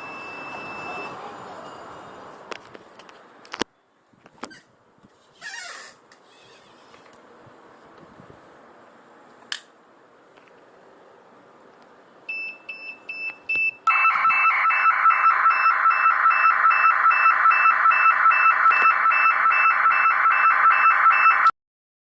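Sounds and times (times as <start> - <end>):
short high beeps: 0.0 - 2.0
fast pulsing alarm tone: 13.9 - 21.5.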